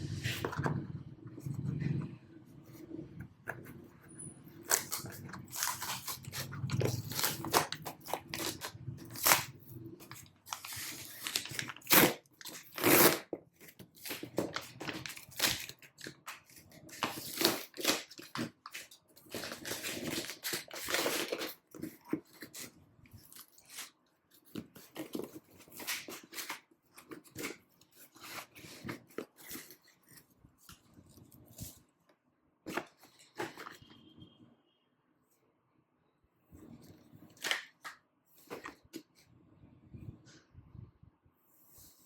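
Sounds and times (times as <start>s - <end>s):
plastic and paper wrappers crinkling: 4.6s - 31.8s.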